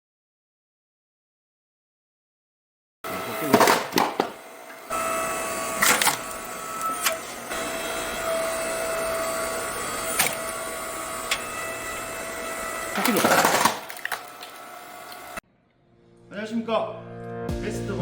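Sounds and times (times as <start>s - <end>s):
log splitter motor humming: 3.1s - 15.4s.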